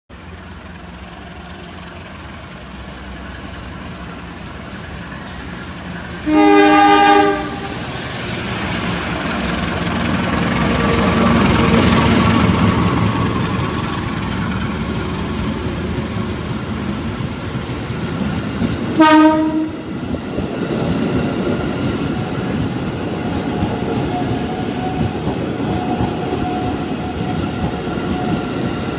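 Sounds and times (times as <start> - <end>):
passenger train rumbling: 0.1 - 28.9
rushing rail noise: 0.1 - 28.9
train horn blast: 6.2 - 7.9, 19.0 - 19.9.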